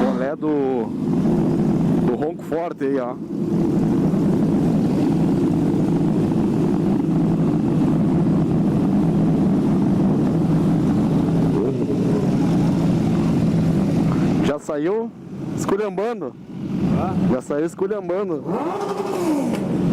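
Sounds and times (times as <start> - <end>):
motorcycle engine running: 0.0 - 14.5.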